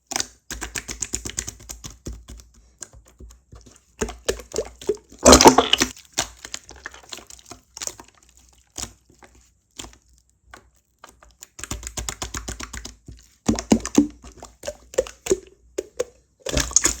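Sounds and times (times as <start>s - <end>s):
slime squishing and popping: 4.0s - 7.3s, 13.5s - 17.0s.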